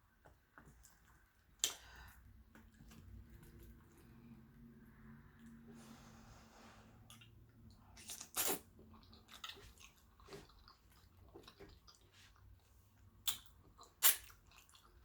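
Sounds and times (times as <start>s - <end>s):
person chewing wetly: 0.7s - 4.5s, 7.1s - 15.0s.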